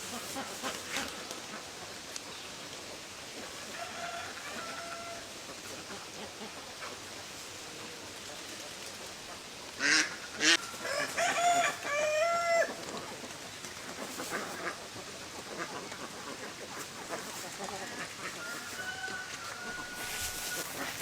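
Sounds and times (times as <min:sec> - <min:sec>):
ducks quacking: 0:00.0 - 0:02.1, 0:08.9 - 0:10.7, 0:12.4 - 0:21.0
steady background hiss: 0:00.0 - 0:21.0.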